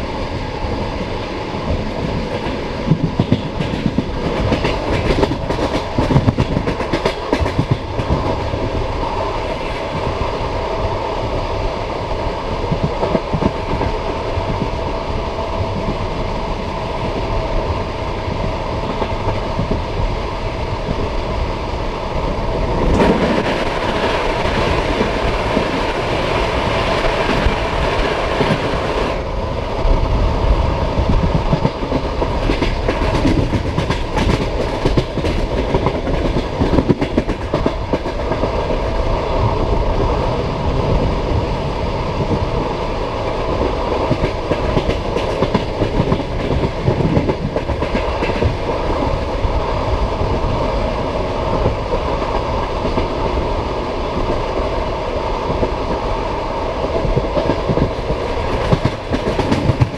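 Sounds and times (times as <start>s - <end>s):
train wheels clattering over rail joints: 1.6s - 8.8s, 31.2s - 38.8s, 43.6s - 49.1s, 56.9s - 59.9s.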